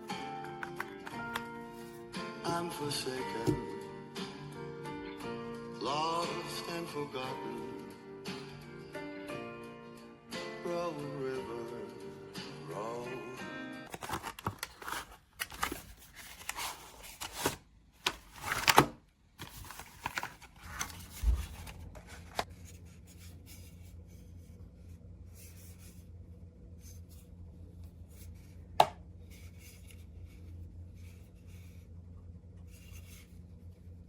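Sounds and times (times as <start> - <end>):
hands handling small objects: 13.9 - 18.8, 19.4 - 23.7
faint low hum: 19.1 - 34.0.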